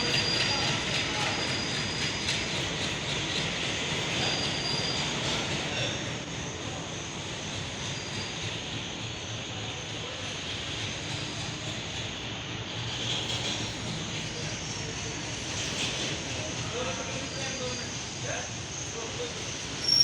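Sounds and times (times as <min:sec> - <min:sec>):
freight train rumble and hiss: 0:00.0 - 0:20.0.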